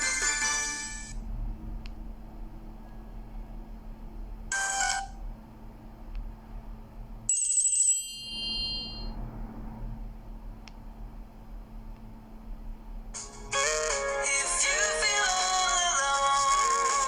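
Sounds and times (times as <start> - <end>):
bright high phone chime: 7.3 - 9.2.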